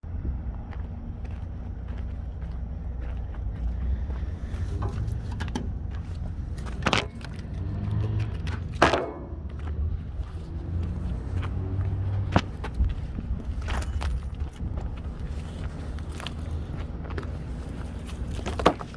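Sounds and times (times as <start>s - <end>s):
diesel truck engine rumbling: 0.0s - 18.9s.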